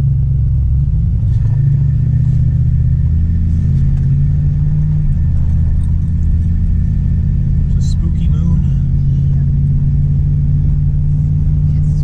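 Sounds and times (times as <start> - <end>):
truck engine droning: 0.0 - 12.0.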